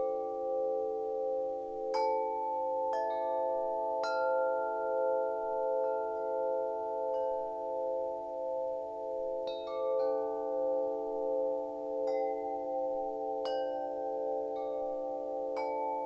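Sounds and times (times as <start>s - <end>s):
wind chimes ringing: 0.0s - 16.0s.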